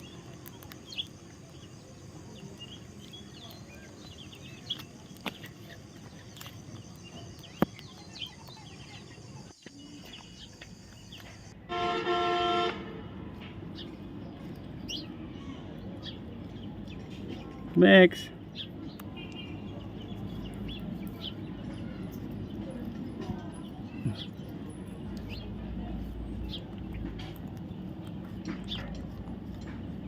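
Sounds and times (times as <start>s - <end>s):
vehicle horn honk: 11.7s - 13.1s.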